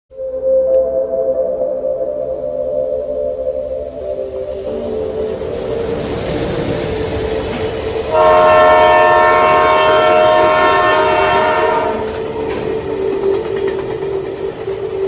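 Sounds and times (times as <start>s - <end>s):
train horn blast: 8.0s - 12.7s.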